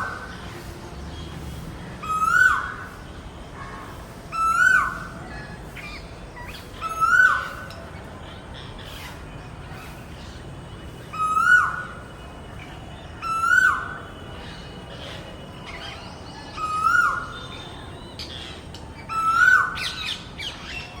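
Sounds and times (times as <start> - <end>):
other birds chirping: 4.0 - 21.0
bird calling: 11.1 - 12.2, 13.2 - 21.0.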